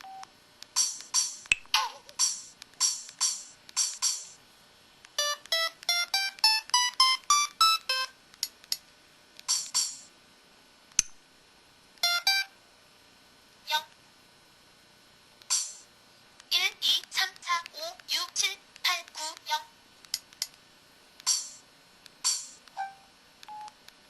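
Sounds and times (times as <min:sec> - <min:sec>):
melodic phone notes: 0:05.2 - 0:08.1.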